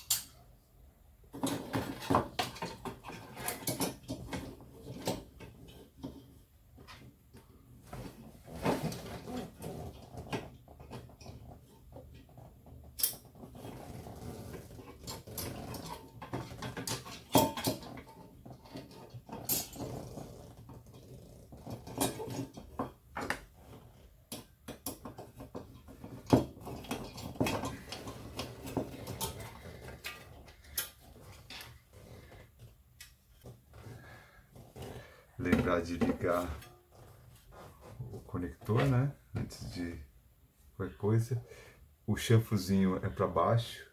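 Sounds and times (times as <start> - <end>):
parts clicking and scraping: 21.5 - 39.0.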